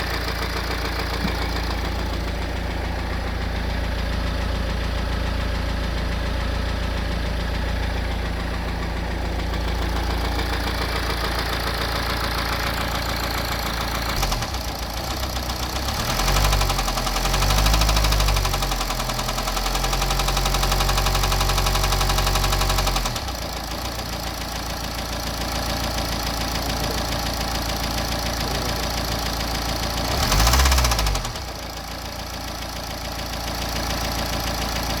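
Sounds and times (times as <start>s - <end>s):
diesel engine knocking at idle: 0.0s - 35.0s
engine revving: 9.7s - 23.9s, 28.2s - 31.7s.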